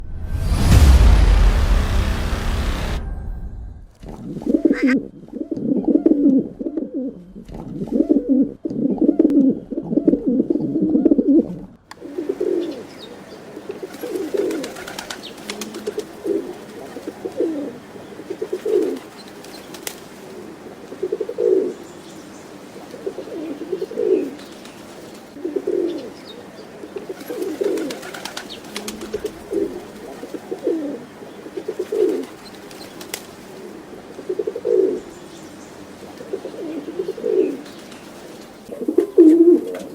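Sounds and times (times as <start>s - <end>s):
pigeon cooing: 4.3s - 19.2s, 20.3s - 21.8s, 22.8s - 24.4s, 25.4s - 35.1s, 36.0s - 39.9s.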